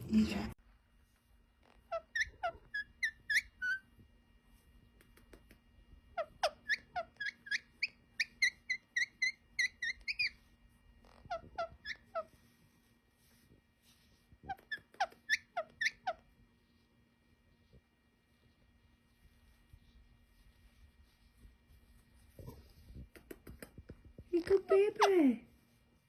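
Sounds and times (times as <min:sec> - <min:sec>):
parrot chirping: 0:01.6 - 0:03.8, 0:06.2 - 0:10.5, 0:11.1 - 0:12.3, 0:14.5 - 0:16.2.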